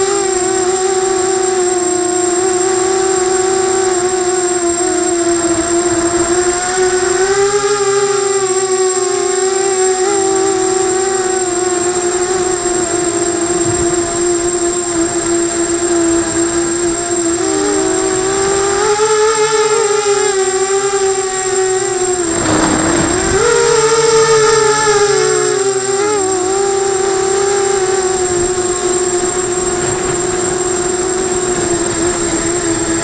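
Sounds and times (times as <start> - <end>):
quadcopter motors whining: 0.0 - 33.0
high thin whine: 21.9 - 28.1.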